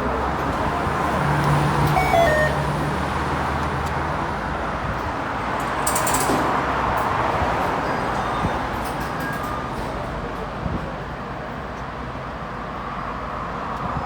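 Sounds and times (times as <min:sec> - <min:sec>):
rush of passing vehicles: 0:00.0 - 0:09.0.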